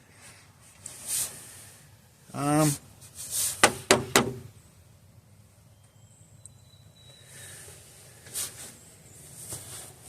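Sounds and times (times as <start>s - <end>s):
sharp knocks of hand tools: 3.6s - 4.5s.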